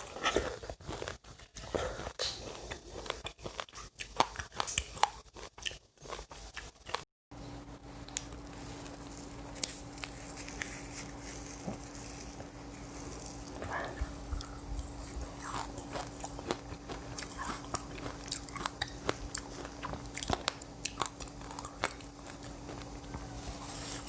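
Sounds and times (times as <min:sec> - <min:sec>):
crunching and chewing seeds: 0:00.0 - 0:24.0
steady low hum: 0:07.3 - 0:24.0.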